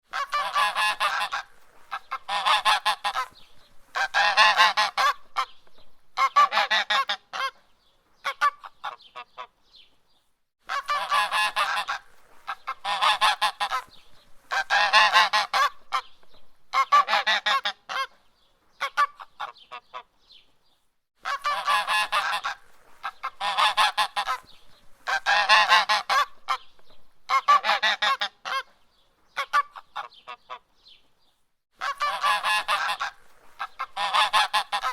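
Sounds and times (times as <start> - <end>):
goose honking loudly: 0.1 - 3.3, 3.9 - 5.2, 10.7 - 13.9, 14.5 - 15.8, 21.2 - 24.4, 25.1 - 26.6, 31.8 - 34.9.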